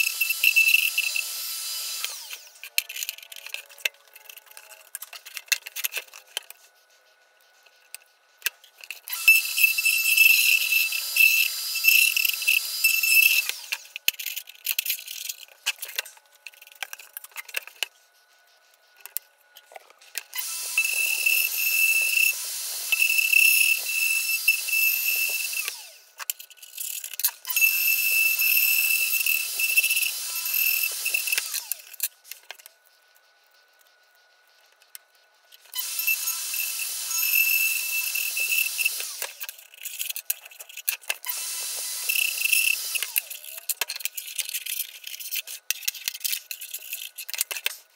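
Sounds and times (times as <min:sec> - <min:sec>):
router high whine: 0:00.0 - 0:04.7, 0:09.1 - 0:14.0, 0:20.3 - 0:26.2, 0:27.4 - 0:34.8, 0:35.6 - 0:39.5, 0:41.2 - 0:43.7.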